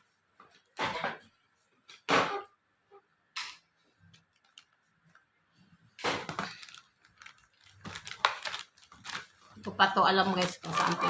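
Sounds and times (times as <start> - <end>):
packaging rustling: 4.0 - 5.2, 6.1 - 11.0.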